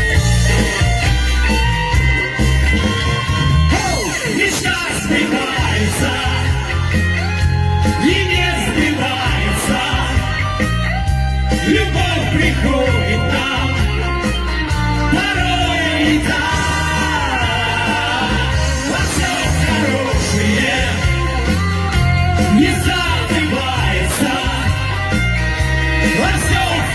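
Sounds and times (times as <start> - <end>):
heavy bass line: 0.0 - 26.9
rock band playing: 0.0 - 26.9
person singing: 3.7 - 10.8, 11.5 - 25.2.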